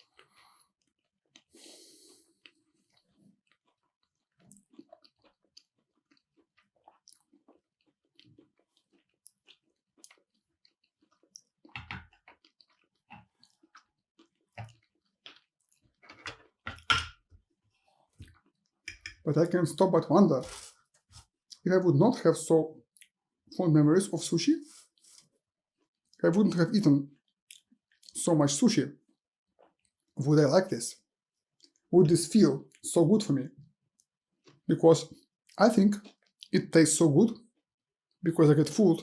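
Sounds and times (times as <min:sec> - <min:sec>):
person chewing food: 0:00.0 - 0:16.6, 0:17.2 - 0:19.3, 0:22.9 - 0:23.2, 0:27.2 - 0:28.2, 0:29.6 - 0:30.1, 0:31.6 - 0:31.9, 0:33.9 - 0:36.6.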